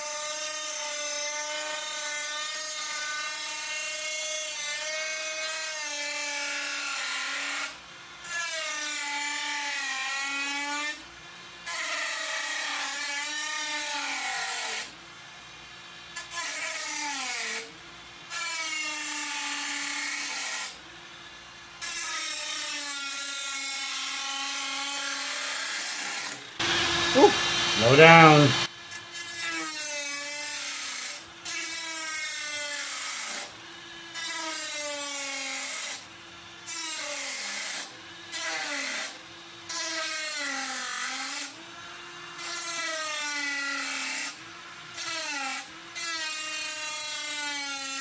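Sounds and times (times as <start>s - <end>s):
high-speed rotary tool grinding: 21.8s - 36.0s, 42.2s - 48.0s.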